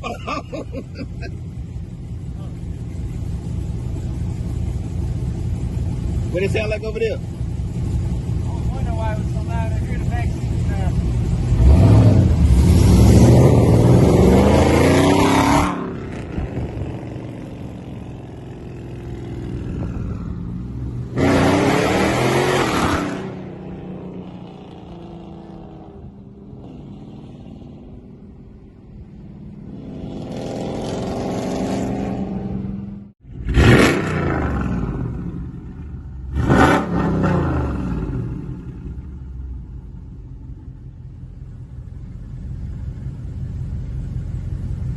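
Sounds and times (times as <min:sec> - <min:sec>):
engine running at steady note: 0:00.0 - 0:14.6, 0:38.0 - 0:44.9
car engine accelerating hard: 0:10.6 - 0:28.3, 0:29.5 - 0:39.2.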